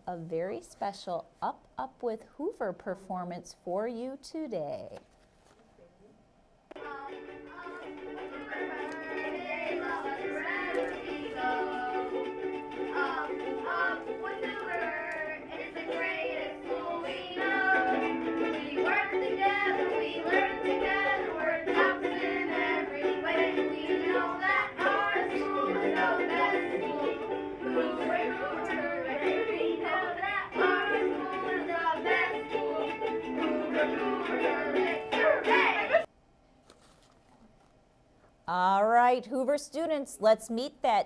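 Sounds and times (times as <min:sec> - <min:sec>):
strummed ukulele chords: 0:06.7 - 0:36.1
person singing: 0:06.8 - 0:36.1.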